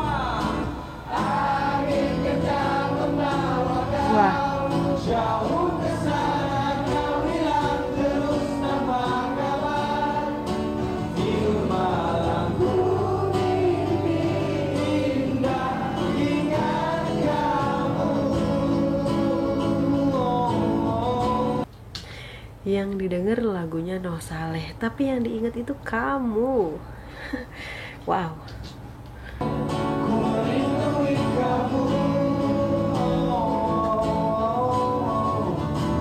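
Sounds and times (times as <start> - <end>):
man singing: 0.0 - 21.7, 29.8 - 36.0
acoustic guitar: 0.0 - 22.5, 28.6 - 36.0.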